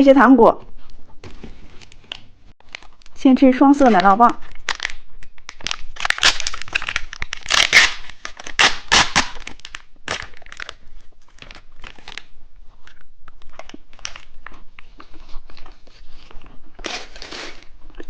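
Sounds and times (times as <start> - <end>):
plastic wrapper tearing and crinkling: 1.8 - 3.2, 3.8 - 14.6, 15.5 - 17.7.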